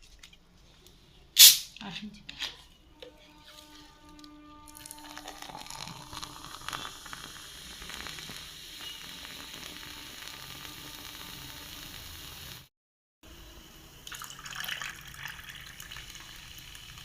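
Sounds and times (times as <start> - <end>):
soda fizzing: 4.7 - 12.7, 14.0 - 17.0.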